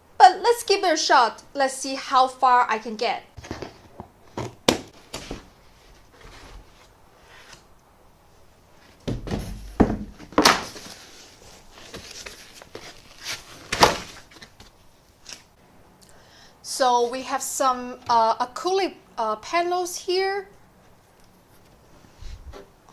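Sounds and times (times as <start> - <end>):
cardboard box being handled: 9.1 - 14.8.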